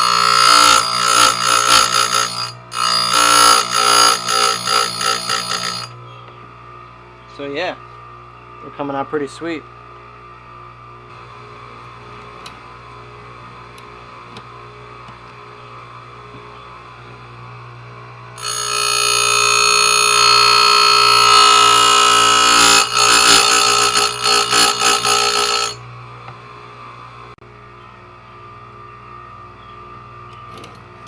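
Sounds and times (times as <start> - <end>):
grinding wheel whining on metal: 0.0 - 6.0, 18.4 - 25.8
sharpener motor humming: 0.0 - 6.0, 18.4 - 25.8.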